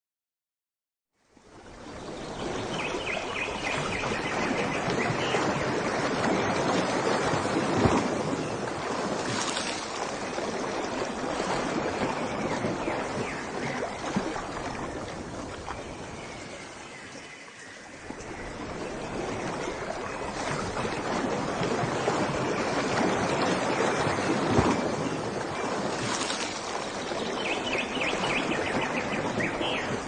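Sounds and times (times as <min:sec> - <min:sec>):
water splashing flow: 0:01.4 - 0:30.0
loud water splash: 0:03.1 - 0:15.8, 0:18.6 - 0:30.0.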